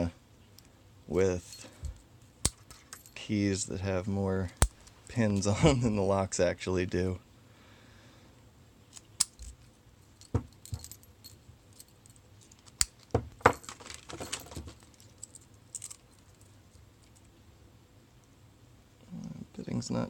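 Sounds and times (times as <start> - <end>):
padlock keys clinking: 1.5 - 3.3, 8.9 - 17.3.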